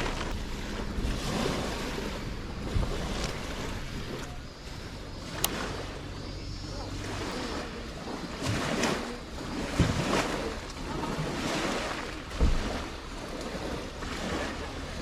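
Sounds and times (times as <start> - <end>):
wind rushing: 0.0 - 5.8
low thumps: 0.0 - 6.0, 12.2 - 13.2
water lapping at shore: 0.0 - 15.0.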